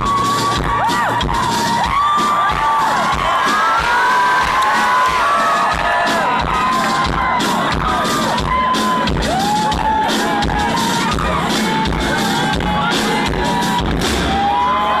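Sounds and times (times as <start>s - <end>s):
drums hitting a steady beat: 0.0s - 14.9s
rock band playing live: 0.0s - 14.9s
crowd shouting and whooping: 0.0s - 15.0s.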